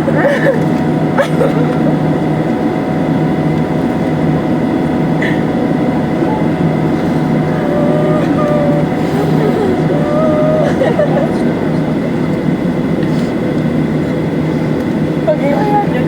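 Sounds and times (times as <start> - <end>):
airplane cabin engine drone: 0.0 - 16.0
thin whining tones: 4.3 - 12.5.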